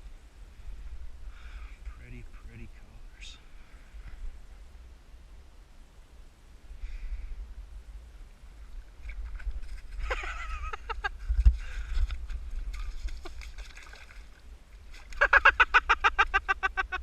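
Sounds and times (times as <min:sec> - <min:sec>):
rapid pulsed laughter: 0:15.2 - 0:17.0.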